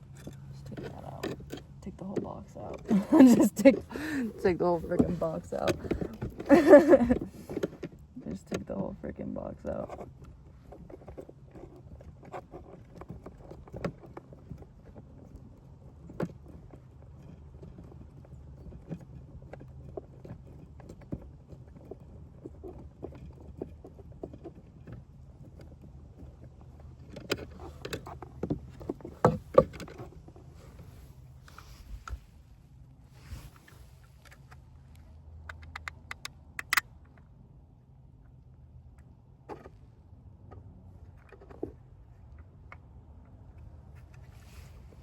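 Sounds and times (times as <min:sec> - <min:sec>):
clatter: 0:00.0 - 0:32.3.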